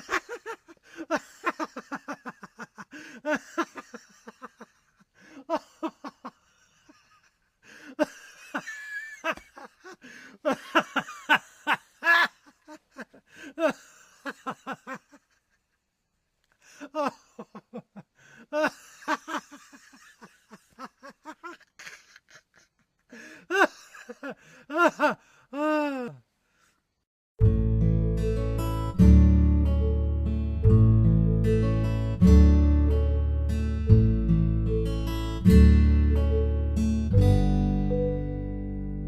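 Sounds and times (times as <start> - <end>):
man laughing heartily: 0.0 - 15.9, 16.7 - 26.2.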